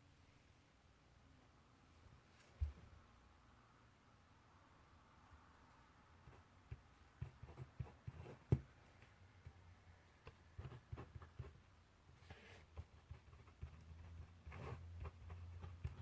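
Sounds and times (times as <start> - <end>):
pen tapping on paper: 6.3 - 8.7, 10.2 - 11.6, 12.8 - 16.0.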